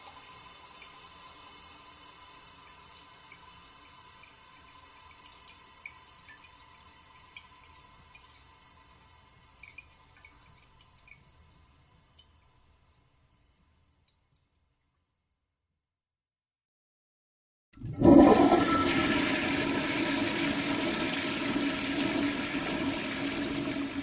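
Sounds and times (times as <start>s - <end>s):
toilet fill valve hissing: 0.0s - 10.8s, 17.8s - 24.0s
water drips: 5.1s - 15.3s.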